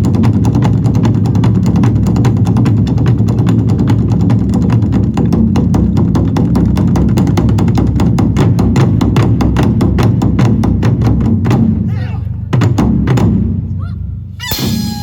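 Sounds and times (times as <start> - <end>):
drums beaten by drummers: 0.0 - 15.0.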